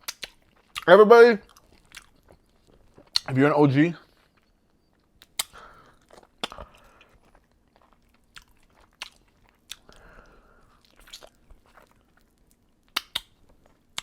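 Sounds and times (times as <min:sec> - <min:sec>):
wet lip smacking and chewing: 0:00.0 - 0:03.3, 0:04.1 - 0:14.0.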